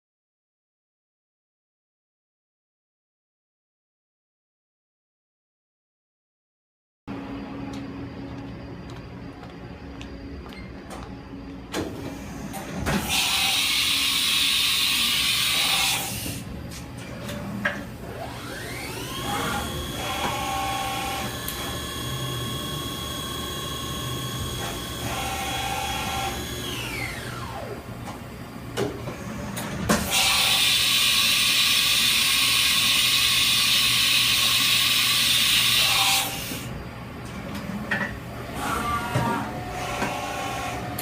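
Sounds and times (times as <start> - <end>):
machine spindle whining: 17.0 - 28.2.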